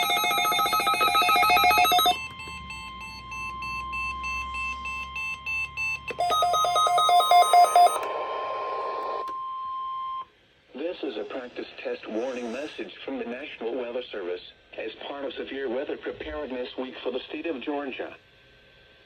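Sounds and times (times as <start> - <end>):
steady warning alarm tone: 0.0 - 8.1.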